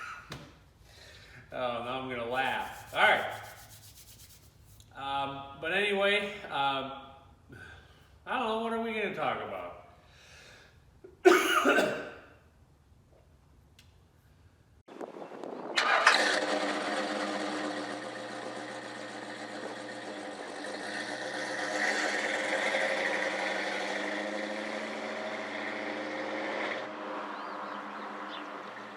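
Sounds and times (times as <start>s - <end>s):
engine cranking and starting: 15.8s - 27.6s
engine running steadily: 15.8s - 28.9s.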